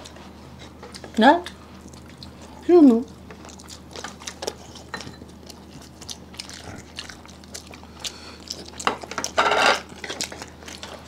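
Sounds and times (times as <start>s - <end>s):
chewing and biting: 0.0s - 11.0s.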